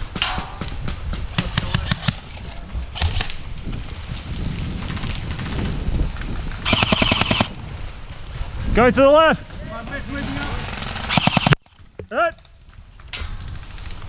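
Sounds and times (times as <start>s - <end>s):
airsoft guns firing: 6.6s - 7.6s, 11.0s - 11.6s.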